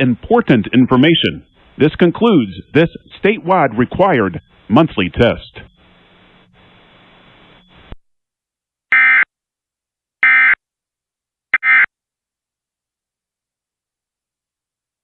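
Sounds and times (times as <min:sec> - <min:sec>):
faint hiss: 0:00.0 - 0:08.0.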